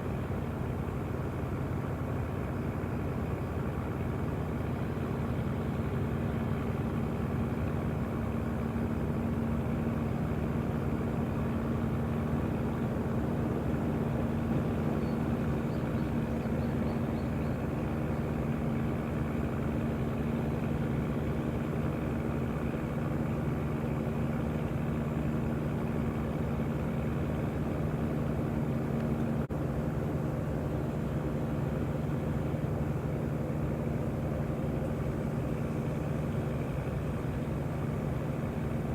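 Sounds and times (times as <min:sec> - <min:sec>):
engine hum: 0:00.0 - 0:38.9.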